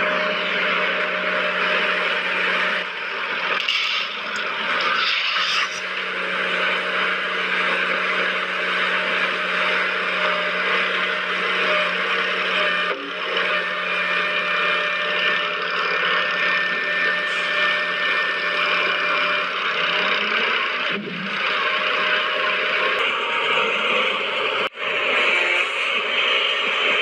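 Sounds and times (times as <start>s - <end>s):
toy electric motor whirring: 3.4s - 6.0s.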